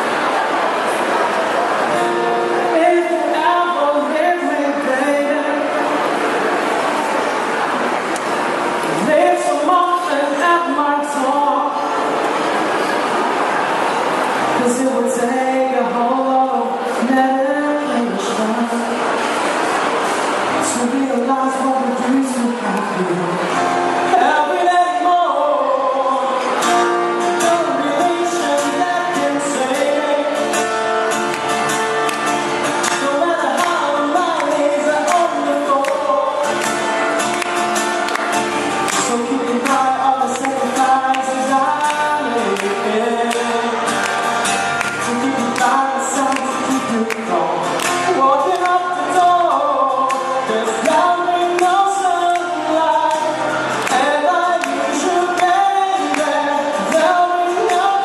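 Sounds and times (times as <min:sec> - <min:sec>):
man singing a pop ballad: 0:02.4 - 0:06.0, 0:08.9 - 0:12.0, 0:14.6 - 0:19.0, 0:20.5 - 0:30.6, 0:32.8 - 0:37.0, 0:38.9 - 0:44.3, 0:44.9 - 0:58.0.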